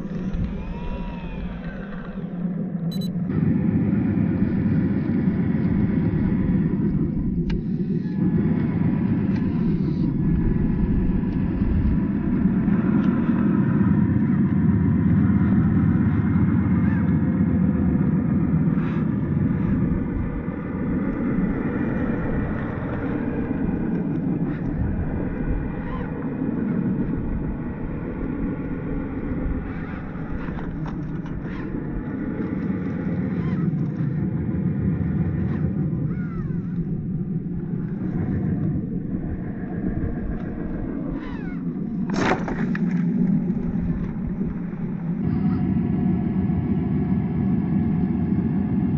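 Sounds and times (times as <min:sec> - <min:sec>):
rc car motor and gears whining: 0:00.0 - 0:03.1, 0:19.0 - 0:34.3, 0:40.2 - 0:45.4
tyres crunching over rocks: 0:41.9 - 0:45.2.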